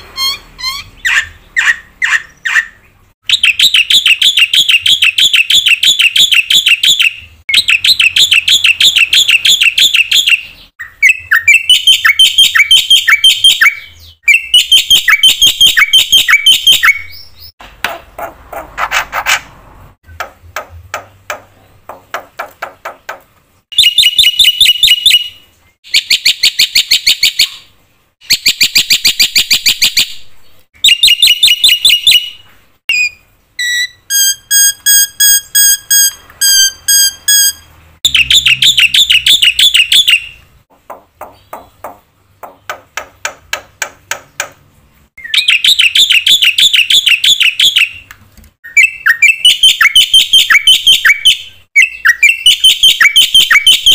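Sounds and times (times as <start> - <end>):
bird whistled notes: 0.2 - 17.5, 30.8 - 40.4, 45.2 - 53.9
bird singing clicks and trills: 20.0 - 27.7, 38.1 - 44.6.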